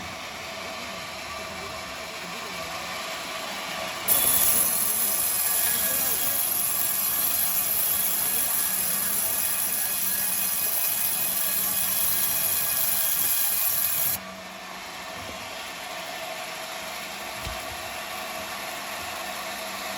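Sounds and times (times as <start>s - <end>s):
sawmill machinery running: 0.0s - 19.9s.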